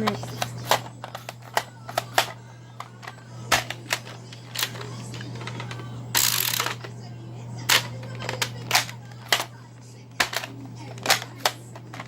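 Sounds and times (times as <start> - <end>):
steady low hum: 0.0 - 12.0
toy blaster mechanism clicking: 5.4 - 6.9.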